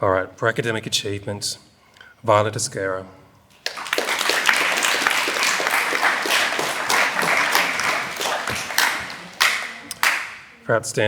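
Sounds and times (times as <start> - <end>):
audience applauding: 3.5 - 10.5.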